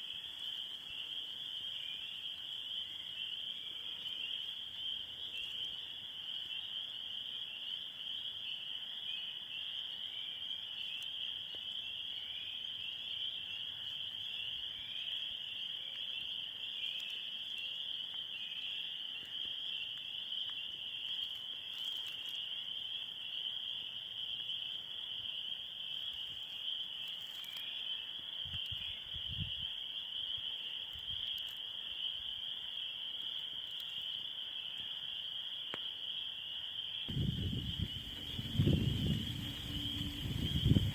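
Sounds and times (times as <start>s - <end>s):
insect chorus: 0.0s - 40.9s
low rumble: 37.1s - 40.9s.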